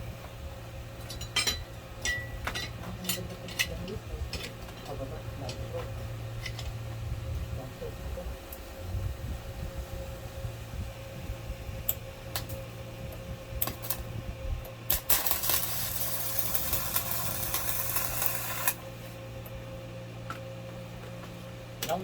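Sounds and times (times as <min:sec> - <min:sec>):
machine hum: 0:00.0 - 0:22.0
welding arc hissing: 0:13.6 - 0:14.1, 0:14.9 - 0:19.2.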